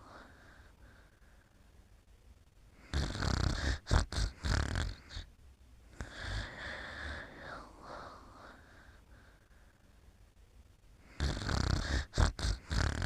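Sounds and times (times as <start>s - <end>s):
person snoring: 2.8s - 5.3s, 5.9s - 9.0s, 11.0s - 13.0s.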